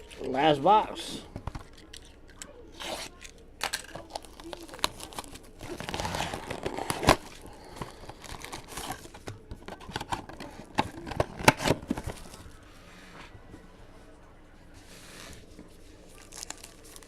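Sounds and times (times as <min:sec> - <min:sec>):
wrappers crinkling and tearing: 0:01.6 - 0:12.6, 0:15.9 - 0:17.0.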